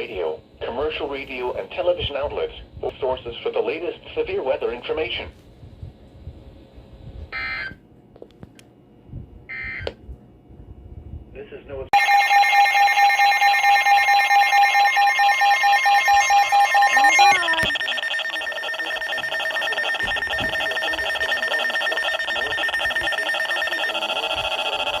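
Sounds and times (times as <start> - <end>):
rapidly pulsing alarm beeping: 12.0 - 25.0.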